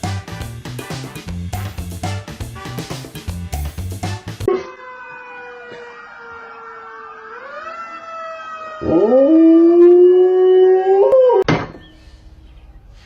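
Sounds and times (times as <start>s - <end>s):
dog howling: 4.5s - 11.5s.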